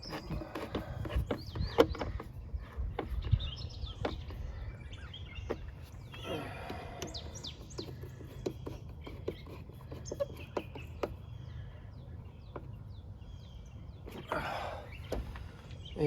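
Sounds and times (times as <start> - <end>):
sharp clicks and knocks: 0.0 - 4.4
birds chirping: 0.0 - 16.0.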